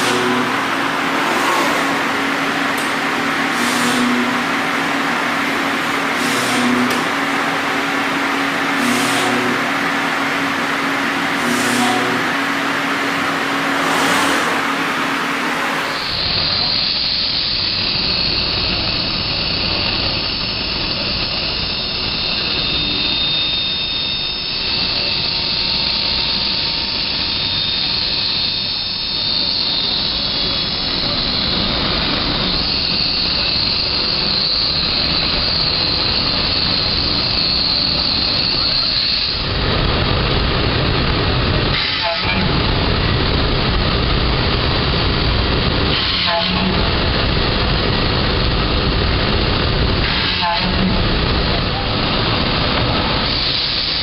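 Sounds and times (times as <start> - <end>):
router spindle cutting whine: 0.0 - 18.5.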